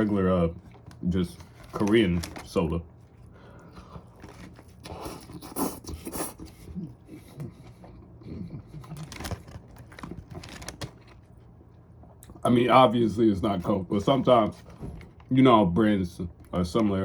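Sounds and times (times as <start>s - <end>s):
person chewing food: 3.2s - 12.4s.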